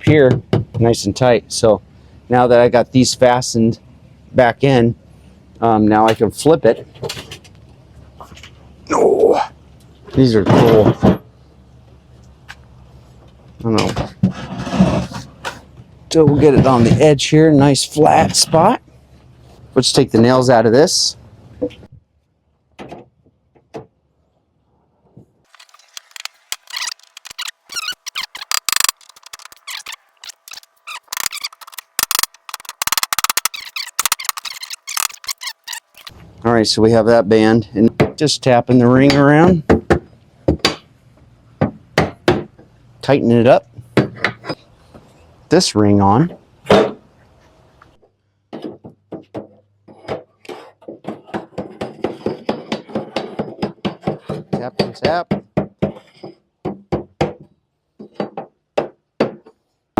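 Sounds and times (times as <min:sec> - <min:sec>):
nails squeaking out of wood: 0:25.5 - 0:36.2
sharp clicks: 0:25.6 - 0:36.1
hammer knocking metal barrel band: 0:51.0 - 0:59.5.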